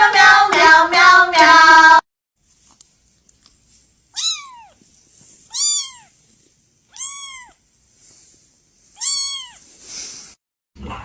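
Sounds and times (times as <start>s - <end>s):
cat meowing: 4.1s - 4.8s, 5.5s - 6.2s, 6.9s - 7.6s, 9.0s - 9.6s.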